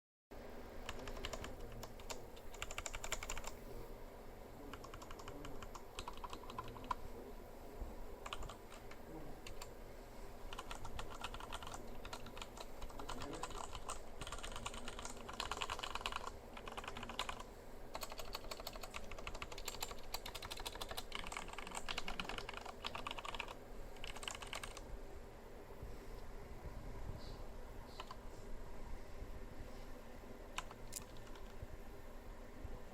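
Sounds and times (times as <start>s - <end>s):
mechanical keyboard typing: 0.8s - 3.6s, 4.7s - 7.0s, 8.2s - 9.7s, 10.5s - 24.8s, 28.0s - 28.2s, 30.6s - 31.6s.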